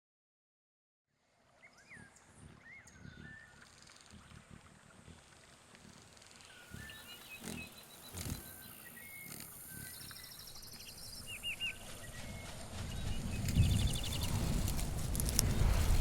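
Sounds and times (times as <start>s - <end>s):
low rumble: 12.0s - 16.0s.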